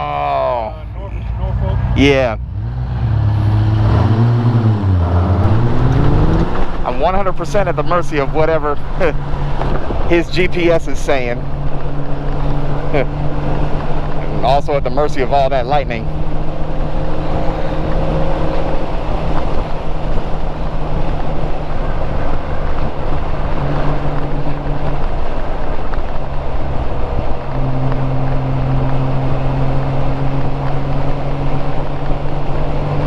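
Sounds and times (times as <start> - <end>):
motorcycle engine at road speed: 1.4 - 33.0
wind noise on microphone: 8.8 - 14.5, 16.0 - 33.0.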